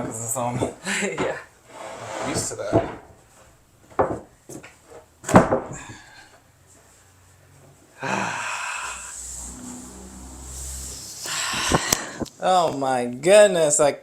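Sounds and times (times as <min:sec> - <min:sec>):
rough scraping noise: 0:01.7 - 0:03.1, 0:09.0 - 0:12.3
sharp wooden knocks: 0:03.9 - 0:04.6, 0:05.2 - 0:05.8.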